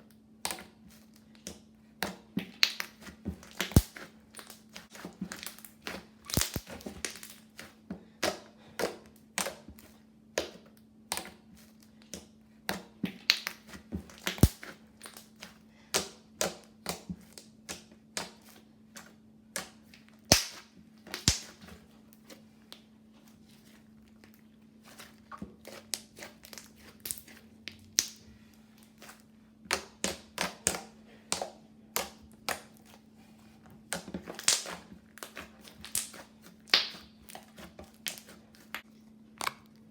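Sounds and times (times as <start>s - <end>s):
slime squished with clicks and pops: 6.3s - 7.4s, 12.1s - 15.3s, 19.5s - 21.5s.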